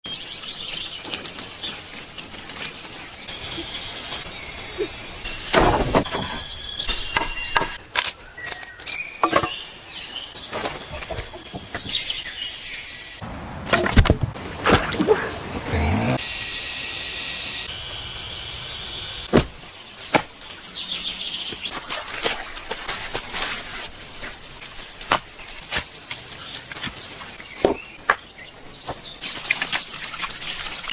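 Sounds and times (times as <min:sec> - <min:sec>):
faint outdoor background noise: 0:00.0 - 0:30.9
high-pitched wildlife chorus: 0:01.7 - 0:19.3.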